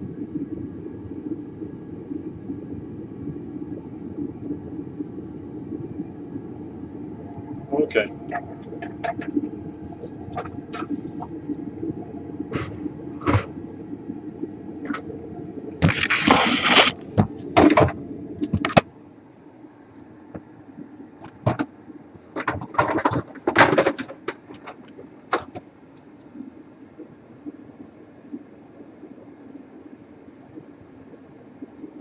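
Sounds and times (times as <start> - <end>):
low steady hum: 0.0 - 32.0
rustling: 15.8 - 17.3.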